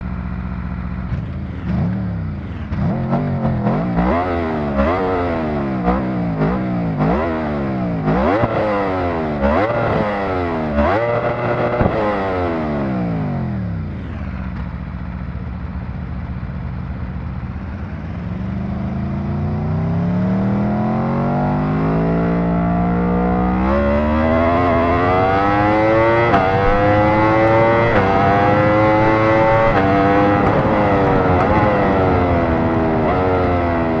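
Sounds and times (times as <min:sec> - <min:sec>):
motorcycle engine idling: 0:00.0 - 0:03.6, 0:13.1 - 0:19.0
motorcycle engine revving: 0:00.0 - 0:34.0.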